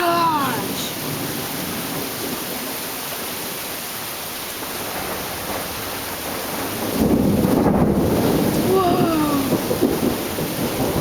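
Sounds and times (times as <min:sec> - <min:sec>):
heavy rain hissing: 0:00.0 - 0:11.0
thunder rumble: 0:04.6 - 0:11.0.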